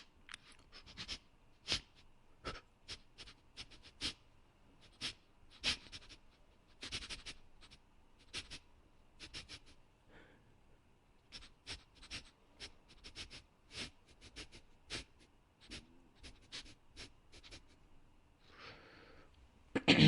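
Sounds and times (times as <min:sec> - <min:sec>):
quick short sniffs: 0:00.7 - 0:04.2, 0:04.8 - 0:08.6, 0:09.2 - 0:09.8, 0:11.3 - 0:17.8
long breath: 0:18.4 - 0:19.4.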